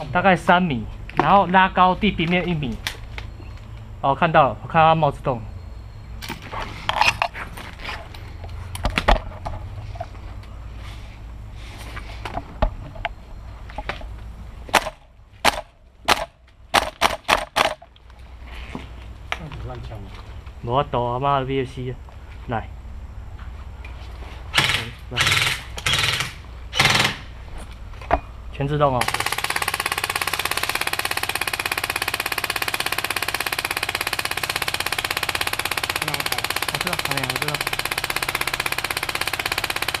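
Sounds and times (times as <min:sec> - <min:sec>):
airsoft rifle shots: 0:14.7 - 0:17.8, 0:24.5 - 0:27.3, 0:29.0 - 0:40.0.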